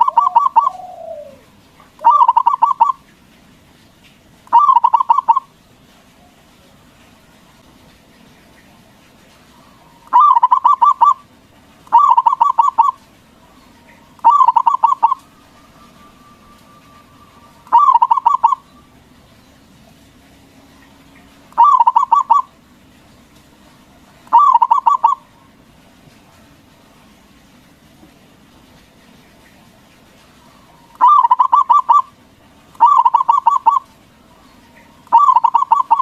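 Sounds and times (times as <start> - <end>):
dove cooing: 0.0 - 3.1, 4.5 - 5.5, 9.6 - 11.3, 11.9 - 19.0, 21.6 - 22.6, 24.3 - 25.4, 30.4 - 32.1, 32.8 - 36.0.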